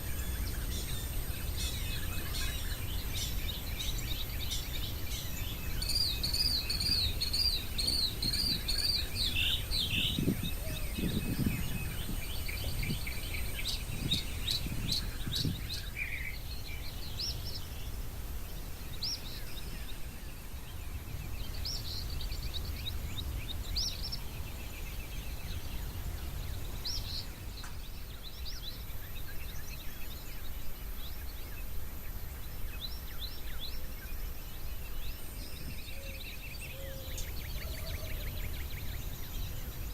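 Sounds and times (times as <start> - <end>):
birds singing and calling: 0.0 - 39.9.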